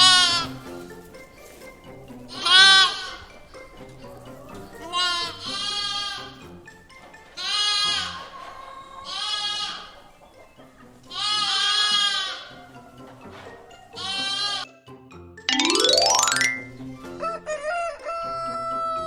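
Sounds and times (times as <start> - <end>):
light background music: 0.0 - 7.8, 15.5 - 16.9
sheep bleating: 9.0 - 10.0, 11.1 - 12.4.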